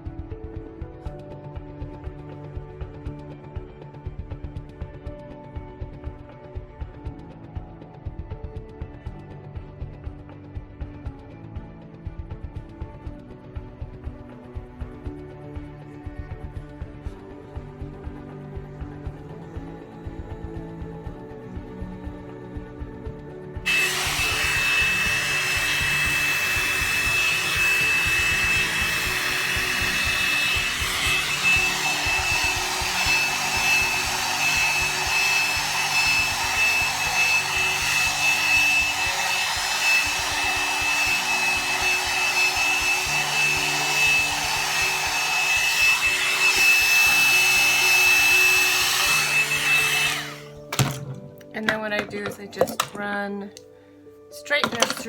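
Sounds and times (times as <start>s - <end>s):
hair dryer fan whining: 23.7s - 53.0s.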